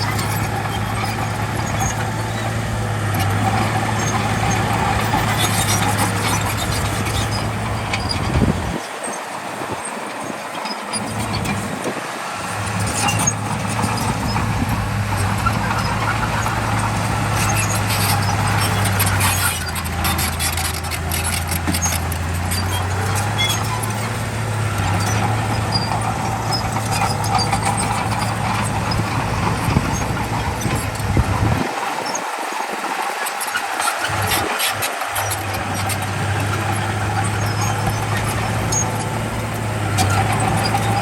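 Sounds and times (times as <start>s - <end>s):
bulldozer diesel engine: 0.0s - 41.0s.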